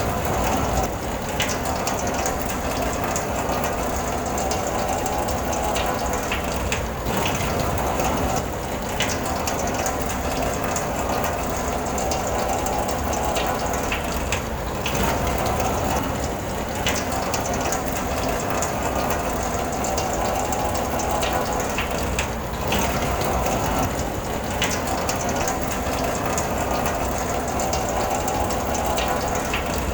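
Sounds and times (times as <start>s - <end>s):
rain hissing: 0.0s - 1.2s
raindrops ticking on car: 0.0s - 29.9s.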